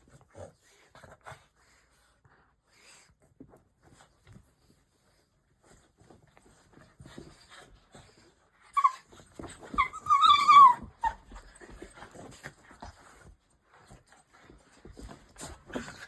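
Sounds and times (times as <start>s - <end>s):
puppy whining: 8.5s - 12.3s.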